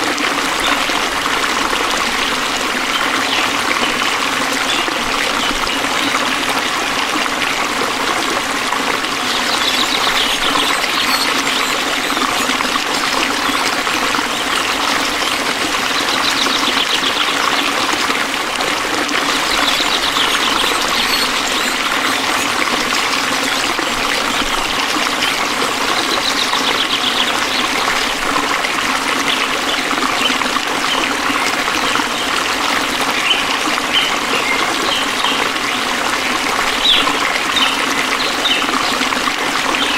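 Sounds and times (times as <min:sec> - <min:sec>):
stream trickling: 0:00.0 - 0:39.9
high rapid animal trill: 0:19.4 - 0:23.8.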